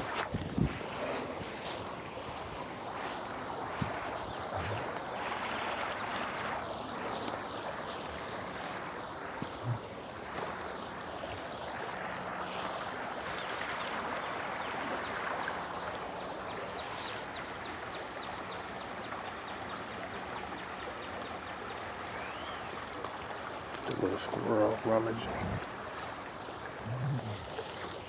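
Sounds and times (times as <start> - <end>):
stream rushing: 0.0 - 28.0
twigs snapping underfoot: 7.1 - 7.5.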